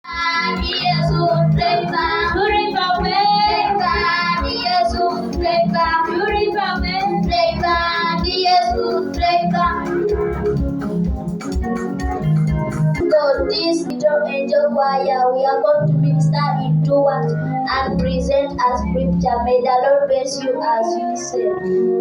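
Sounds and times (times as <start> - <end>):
child singing: 0.1 - 9.9, 13.0 - 21.7
backing music with low beat: 0.1 - 14.1.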